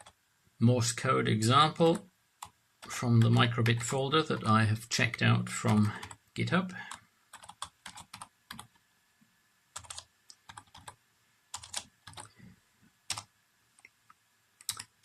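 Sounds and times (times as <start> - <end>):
keyboard typing: 5.7 - 6.2, 6.9 - 8.8, 9.8 - 12.4, 13.1 - 13.9, 14.6 - 15.0.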